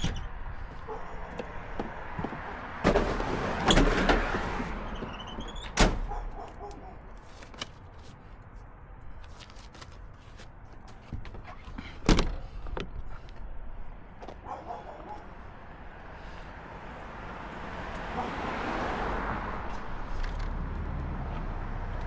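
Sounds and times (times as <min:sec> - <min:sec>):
heavy thuds and clunks: 0:01.7 - 0:06.3.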